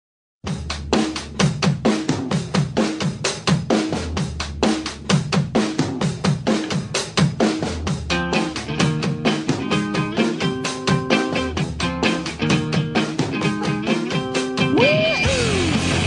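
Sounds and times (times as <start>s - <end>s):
rock drum beat: 0.4s - 16.0s
guitar: 6.5s - 16.0s.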